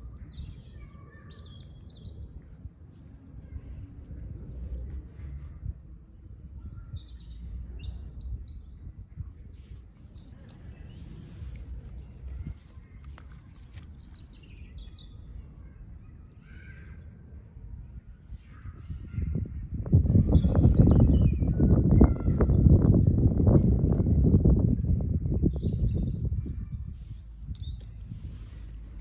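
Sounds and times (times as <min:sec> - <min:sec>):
birds chirping: 0:06.2 - 0:17.4.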